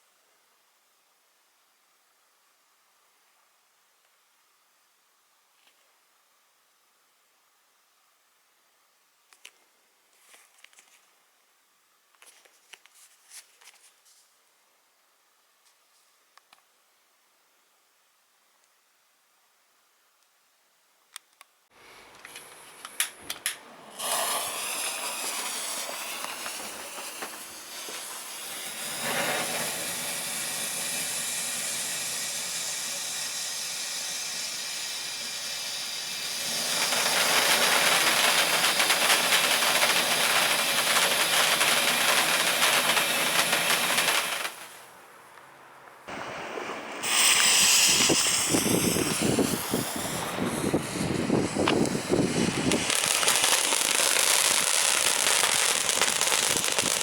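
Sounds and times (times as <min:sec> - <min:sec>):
firework fountain hissing sparks: 0:22.3 - 0:45.0, 0:46.1 - 0:57.0
firework pops: 0:23.0 - 0:28.2, 0:36.5 - 0:44.8, 0:46.1 - 0:57.0.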